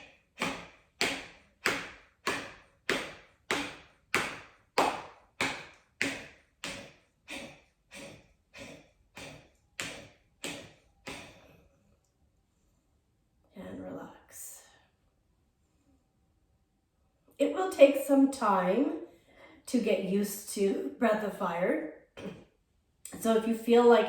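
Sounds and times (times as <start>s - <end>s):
forceful rapid nasal exhales: 0.0s - 11.6s.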